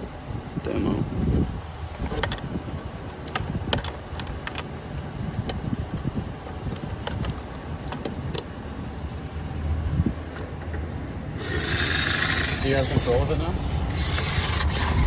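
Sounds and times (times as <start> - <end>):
toy car low rumble: 10.2 - 15.0.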